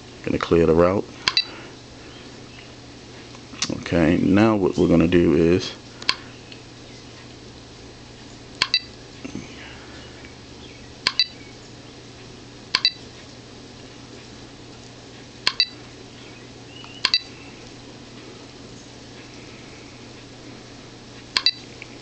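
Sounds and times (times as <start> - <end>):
touchscreen double click-beeps: 8.6 - 8.9, 11.1 - 11.4, 12.8 - 13.0, 17.0 - 17.3, 21.4 - 21.6.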